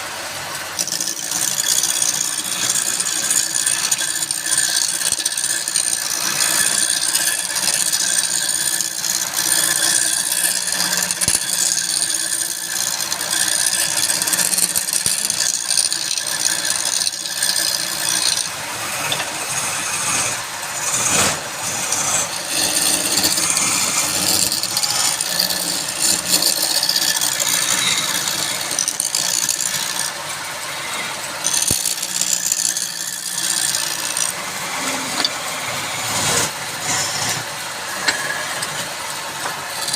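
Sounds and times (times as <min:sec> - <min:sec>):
tool scraping spinning wood: 0:00.0 - 0:39.9
wood lathe running: 0:00.0 - 0:39.9.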